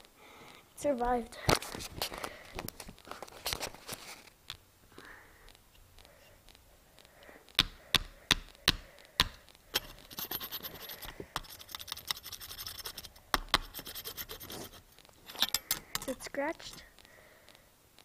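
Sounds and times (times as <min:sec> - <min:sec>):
scratching and rubbing: 0:01.6 - 0:04.4, 0:09.7 - 0:16.9.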